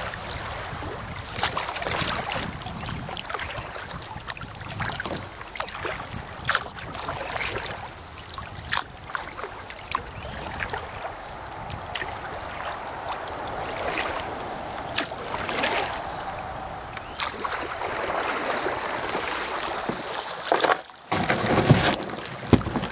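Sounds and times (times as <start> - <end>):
water splashes and ticks: 0.0 - 22.9
river water rushing: 7.0 - 21.1.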